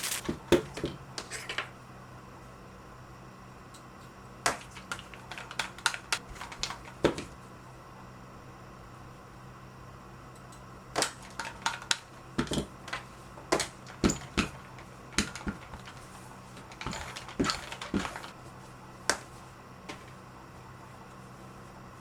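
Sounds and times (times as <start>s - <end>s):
clicks of small hard objects: 0.0s - 0.3s.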